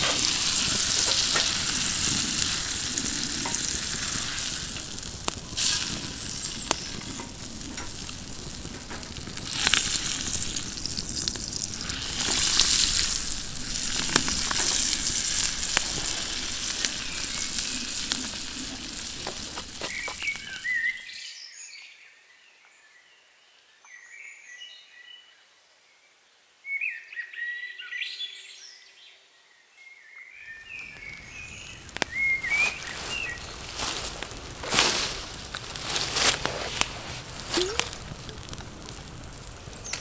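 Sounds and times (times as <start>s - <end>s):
food sizzling in frying pan: 0.0s - 21.1s, 30.8s - 40.0s
small birds chirping: 0.0s - 21.8s, 30.5s - 40.0s.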